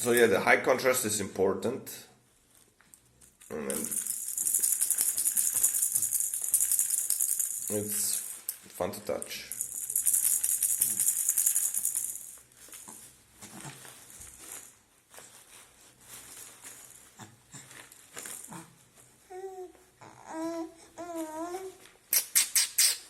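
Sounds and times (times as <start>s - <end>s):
baby rattle shaken: 3.4s - 14.8s, 16.1s - 18.8s
baby cooing: 19.3s - 21.8s.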